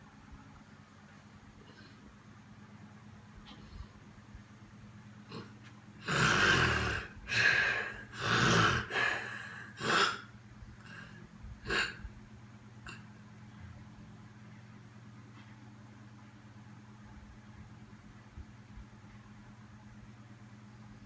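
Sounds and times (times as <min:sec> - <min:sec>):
person snoring heavily: 0:05.3 - 0:12.0.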